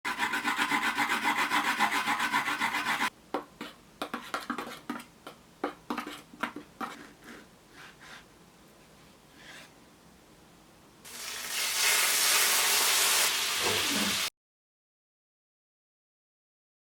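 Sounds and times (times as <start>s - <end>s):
onion grated on a grater: 0.1s - 3.1s
scattered scrapes and taps: 0.2s - 7.4s.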